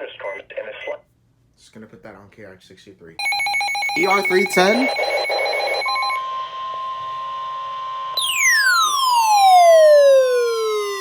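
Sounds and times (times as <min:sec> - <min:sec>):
steady alert tone: 0:03.2 - 0:06.2
falling pitch glide: 0:08.2 - 0:11.0.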